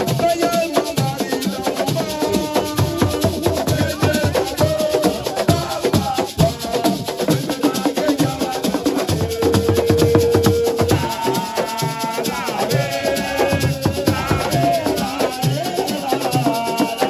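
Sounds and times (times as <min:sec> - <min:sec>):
fast hand drumming: 0:00.0 - 0:17.0
person singing: 0:00.0 - 0:17.0
rattling shakers: 0:00.0 - 0:17.0.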